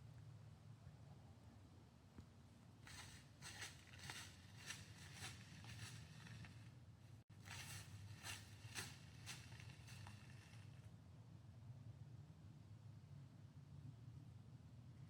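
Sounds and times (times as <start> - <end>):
hoof scratching leaves and dirt: 2.8 - 6.7, 7.3 - 10.8.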